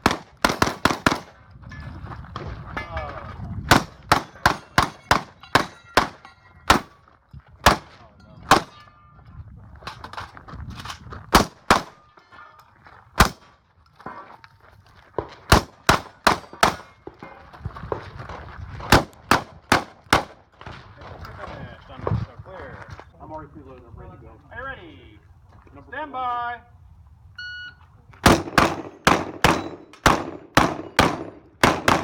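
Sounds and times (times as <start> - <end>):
shotgun shots: 0.0 - 1.4, 3.7 - 7.0, 7.6 - 8.8, 11.3 - 12.0, 13.2 - 13.6, 15.5 - 17.2, 18.9 - 20.4, 28.2 - 32.0
steel targets clanging: 4.2 - 6.7.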